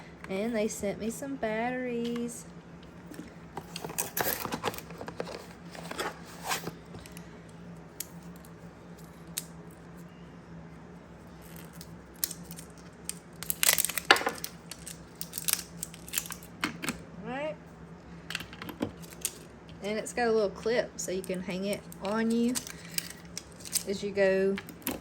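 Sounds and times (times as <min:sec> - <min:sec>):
packaging tearing and crinkling: 0:11.7 - 0:16.5.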